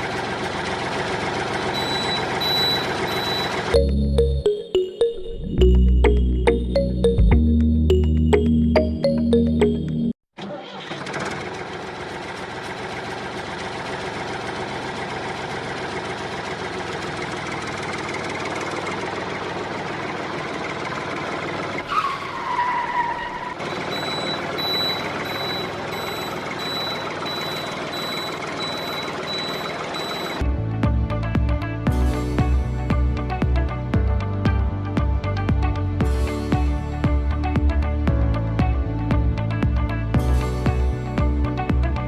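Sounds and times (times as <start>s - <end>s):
vehicle engine running: 0.0s - 4.4s, 10.9s - 22.5s, 23.4s - 42.0s
pulsing reversing alarm beep: 1.8s - 3.6s, 23.6s - 30.4s.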